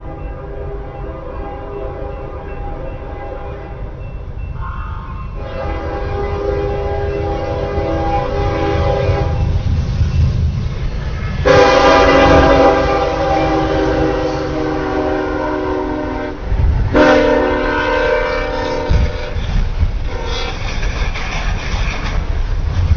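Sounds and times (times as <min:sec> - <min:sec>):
locomotive horn blasts: 0:00.0 - 0:04.0, 0:05.4 - 0:09.6, 0:11.4 - 0:19.4, 0:20.1 - 0:20.5
train rumble: 0:00.0 - 0:22.9.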